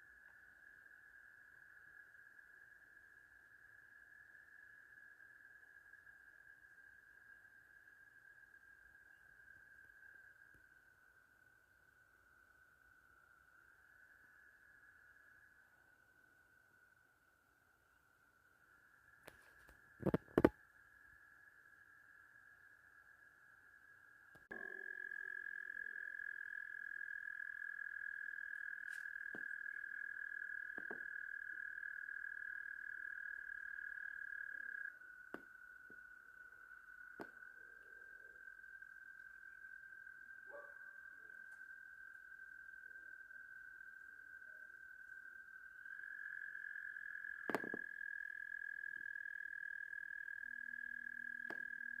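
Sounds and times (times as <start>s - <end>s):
frogs and toads trilling: 18.6s - 52.0s
low steady tone: 20.0s - 52.0s.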